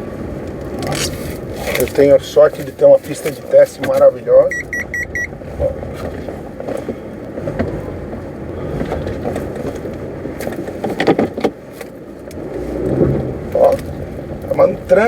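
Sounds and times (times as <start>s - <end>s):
car rolling with steady rumble: 0.0s - 15.0s
suspension clunks: 0.0s - 15.0s.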